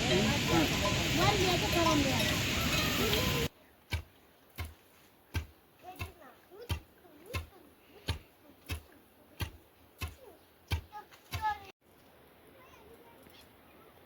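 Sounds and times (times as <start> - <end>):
loud hiss: 0.0 - 3.5.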